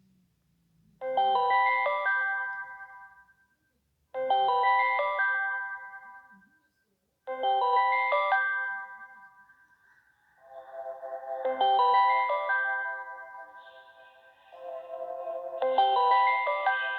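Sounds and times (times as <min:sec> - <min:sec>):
phone ringtone melody: 0:07.4 - 0:09.4, 0:10.4 - 0:16.9.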